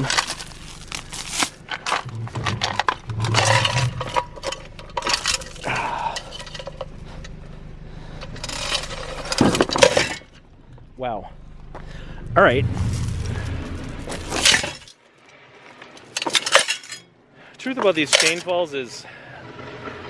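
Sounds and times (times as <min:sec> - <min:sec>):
steel chain clinking and rattling: 0:00.0 - 0:07.5, 0:08.2 - 0:10.4, 0:14.2 - 0:14.9, 0:15.9 - 0:17.1, 0:18.0 - 0:18.6
metal scraping on metal: 0:02.0 - 0:07.4, 0:12.3 - 0:14.9.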